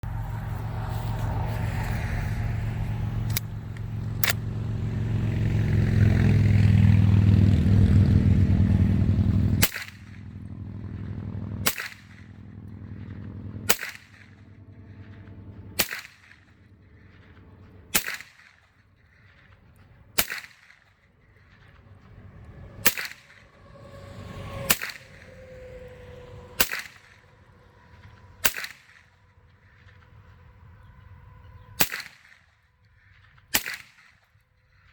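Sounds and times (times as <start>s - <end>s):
loud low rumble: 0.0s - 17.9s, 21.1s - 31.8s
suppressed rifle shots: 4.2s - 4.4s, 9.6s - 10.2s, 10.9s - 15.2s, 15.8s - 18.6s, 20.2s - 20.8s, 22.8s - 23.4s, 26.6s - 27.1s, 28.4s - 29.0s, 31.8s - 32.4s, 33.5s - 34.2s.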